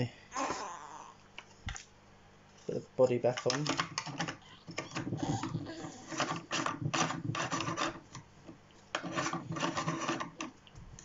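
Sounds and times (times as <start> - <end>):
hard plastic scraping: 3.4 - 8.0, 8.9 - 10.5.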